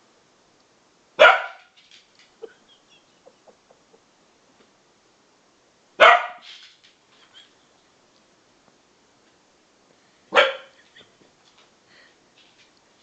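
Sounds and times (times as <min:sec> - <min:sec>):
dog barking: 0:01.2 - 0:01.7, 0:06.0 - 0:06.5, 0:10.3 - 0:10.8.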